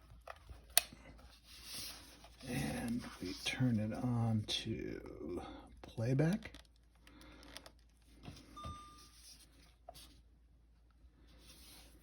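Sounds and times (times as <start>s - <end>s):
short high beep: 8.6s - 9.2s.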